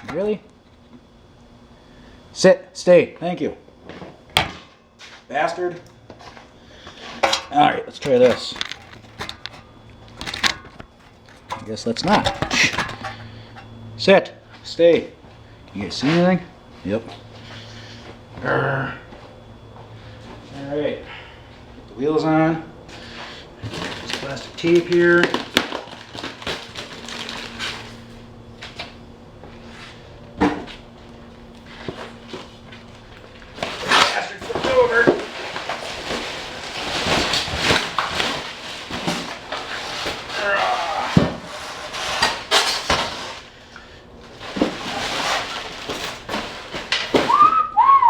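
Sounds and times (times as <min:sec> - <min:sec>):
handling knocks and rustles: 0:06.1 - 0:13.8, 0:23.0 - 0:43.6, 0:44.2 - 0:47.5.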